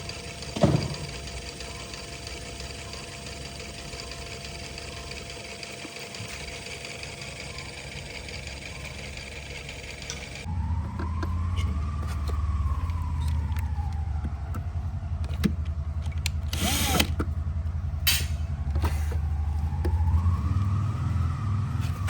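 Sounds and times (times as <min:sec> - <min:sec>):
fan motor knocking: 0:00.0 - 0:07.8.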